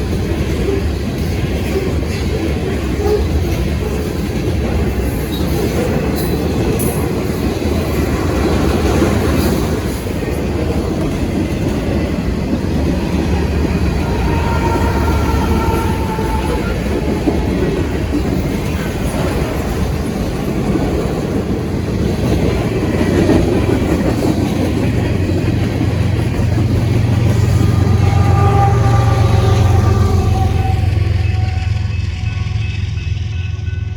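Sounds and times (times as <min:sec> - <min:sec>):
freight train rumbling: 0:00.0 - 0:33.9.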